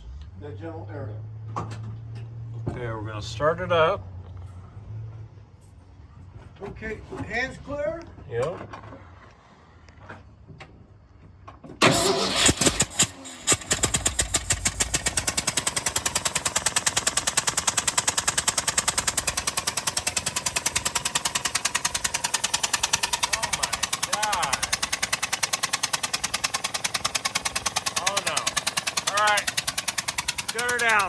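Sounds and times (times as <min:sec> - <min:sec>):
engine cranking: 0:11.8 - 0:31.0
engine running with popping blast: 0:11.8 - 0:31.0.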